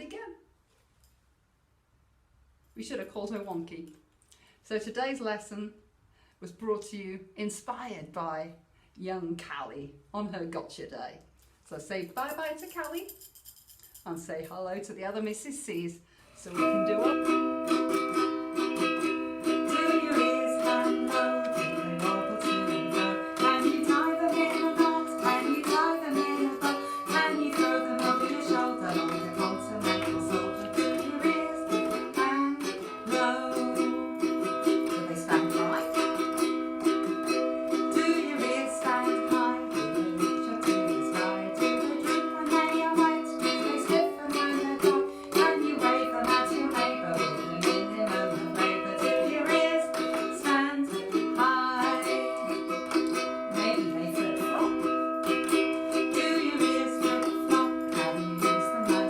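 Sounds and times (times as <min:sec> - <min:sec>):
ukulele strumming chords: 0:16.5 - 0:59.0.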